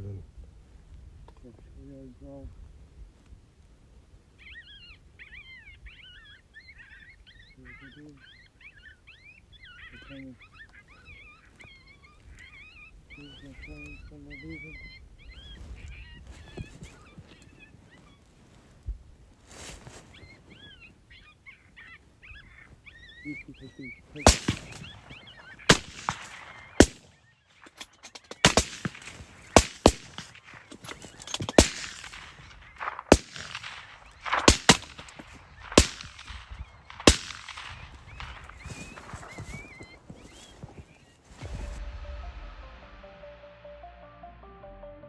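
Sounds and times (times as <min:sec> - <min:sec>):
geese honking: 0:20.5 - 0:40.8
rifle shots: 0:24.2 - 0:39.9.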